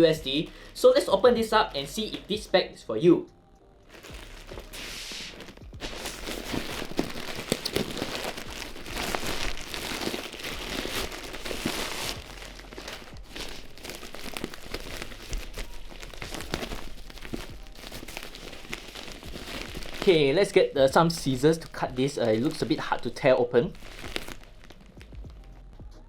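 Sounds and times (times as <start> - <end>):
plastic packaging crinkling: 0.0 - 2.3, 3.8 - 25.2.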